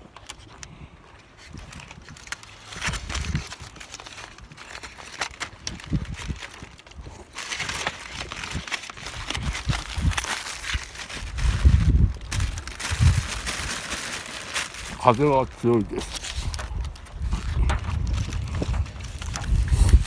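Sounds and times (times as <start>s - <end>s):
small clicks and rustles: 0.0s - 13.4s, 14.1s - 20.0s
gusty wind buffeting microphone: 2.8s - 3.6s, 5.6s - 14.0s, 14.8s - 20.0s.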